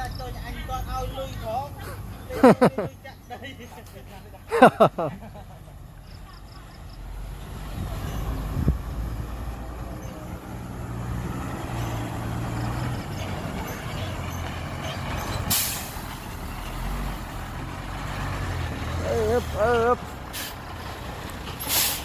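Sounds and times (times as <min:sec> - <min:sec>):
heavy diesel engine running: 0:04.5 - 0:22.0
short sharp hiss: 0:21.7 - 0:22.0.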